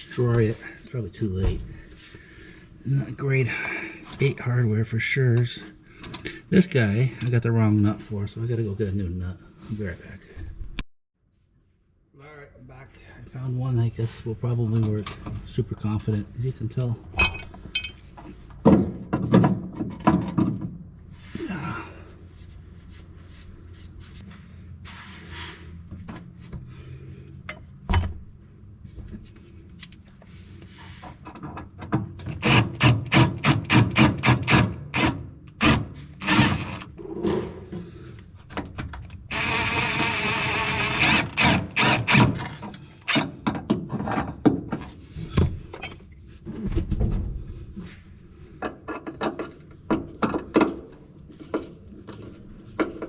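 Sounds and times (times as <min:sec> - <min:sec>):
small power tool whine: 0:34.9 - 0:36.9, 0:39.2 - 0:42.2.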